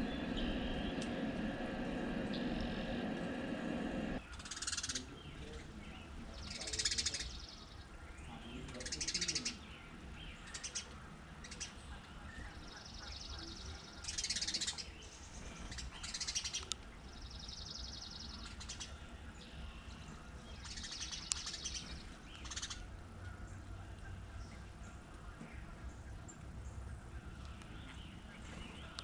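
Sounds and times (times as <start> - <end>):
bird trills: 0.0 - 5.7, 10.4 - 23.6
songbirds chirping: 0.0 - 29.0.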